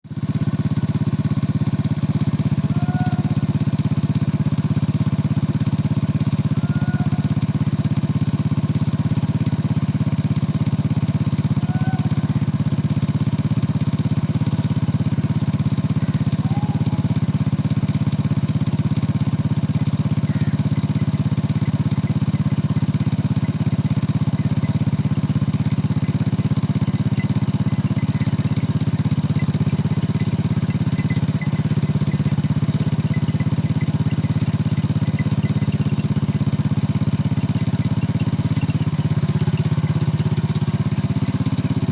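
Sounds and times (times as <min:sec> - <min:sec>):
engine humming at idle: 0:00.0 - 0:41.9.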